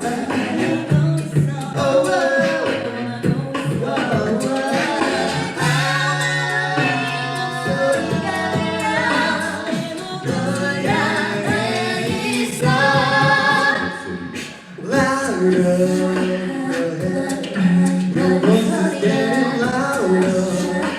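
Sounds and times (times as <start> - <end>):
a cappella group singing: 0.0 - 20.9.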